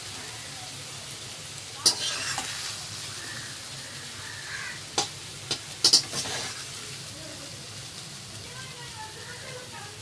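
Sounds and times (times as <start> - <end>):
faint steady hiss: 0.0 - 10.0
spoon clinking and scraping on pan: 1.8 - 2.8, 4.9 - 6.8.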